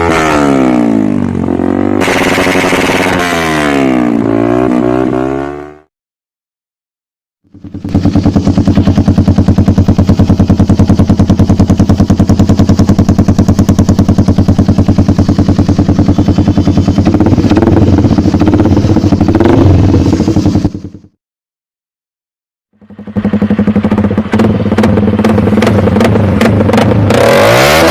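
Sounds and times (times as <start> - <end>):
motorcycle engine idling: 7.5 - 21.2, 22.8 - 27.3.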